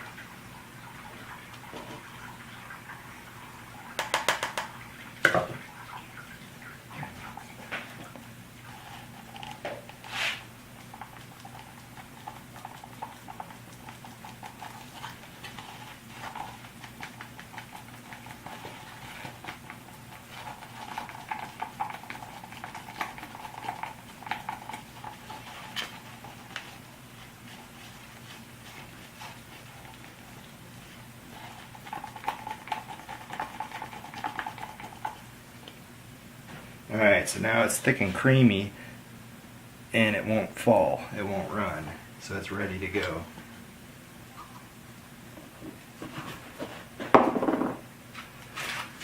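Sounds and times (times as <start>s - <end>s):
low steady hum: 0.0s - 49.0s
stick scraping mixing cup: 8.7s - 35.2s.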